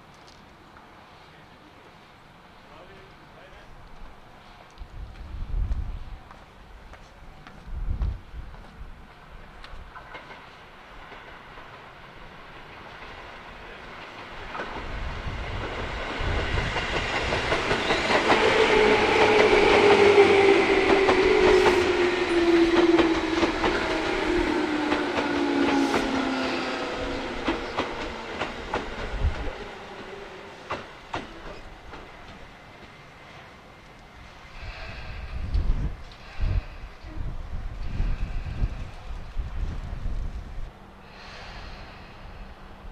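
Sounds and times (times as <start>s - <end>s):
electric train passing: 9.0s - 42.9s
wheels clicking over rail joints: 12.8s - 32.9s.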